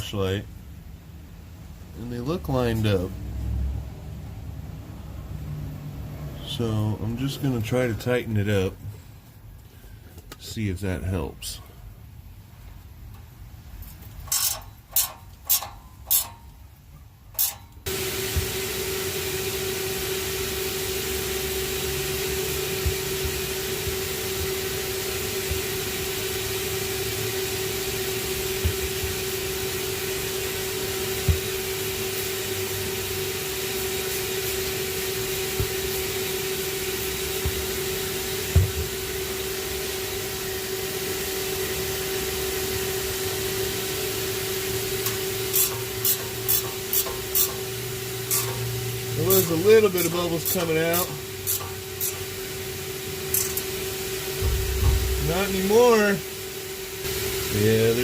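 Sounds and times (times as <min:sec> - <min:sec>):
shop vacuum running: 0:01.7 - 0:11.8, 0:17.4 - 0:58.0.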